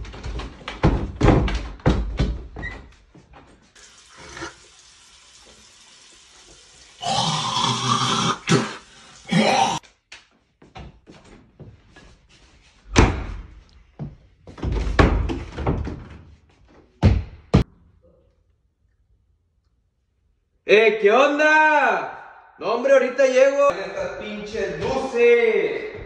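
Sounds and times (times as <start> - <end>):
knocks and thuds: 0.0 - 2.7, 14.6 - 16.2, 17.0 - 17.6.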